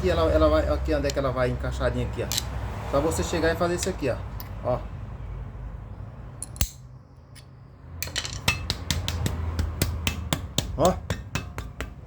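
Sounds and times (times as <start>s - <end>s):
sharp metal click: 6.4s - 8.6s
light metallic knocks: 7.4s - 12.0s.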